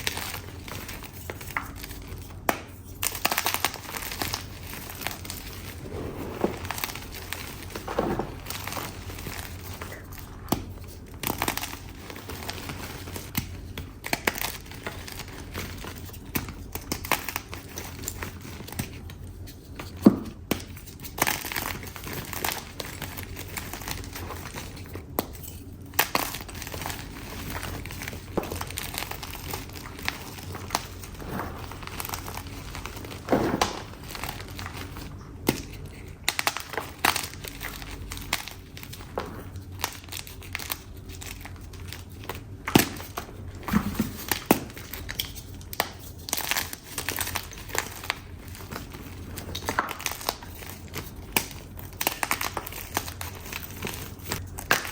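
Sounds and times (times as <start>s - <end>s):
chalk crunching and crumbling: 0.0s - 13.4s, 26.6s - 39.7s.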